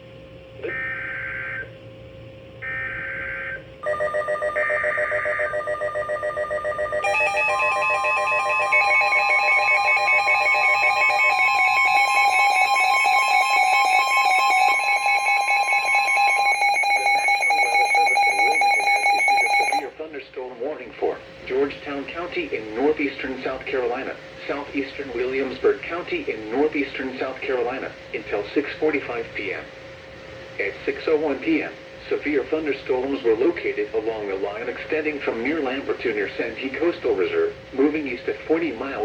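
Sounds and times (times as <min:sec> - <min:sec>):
steady warning alarm tone: 0:00.6 - 0:19.9
pulsing alarm beeps: 0:02.6 - 0:19.9
harsh digital data bursts: 0:02.8 - 0:19.8.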